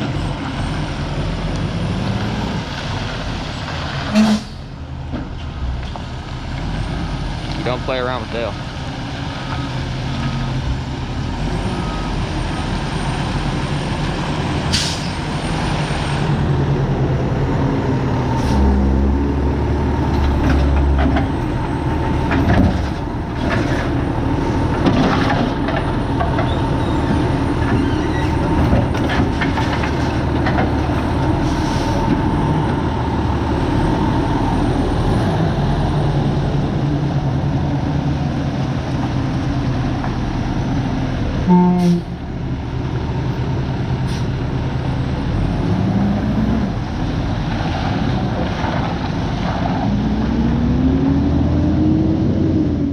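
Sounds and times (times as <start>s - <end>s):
diesel garbage truck engine rumbling: 0.0s - 52.9s
air brakes hissing: 14.7s - 15.2s.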